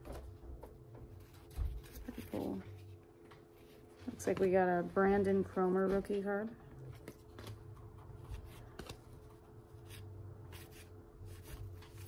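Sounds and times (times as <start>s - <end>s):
cards rustling and flicking: 6.9s - 12.0s.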